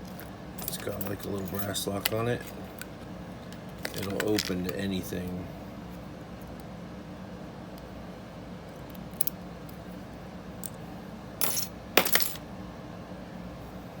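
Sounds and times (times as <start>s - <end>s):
clinking rattles: 11.4s - 12.4s.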